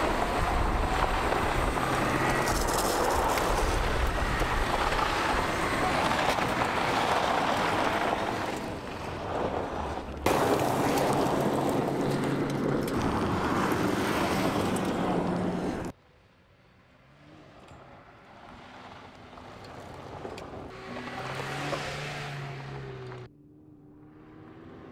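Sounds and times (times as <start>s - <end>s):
off-road vehicle engine running: 0.0s - 15.9s.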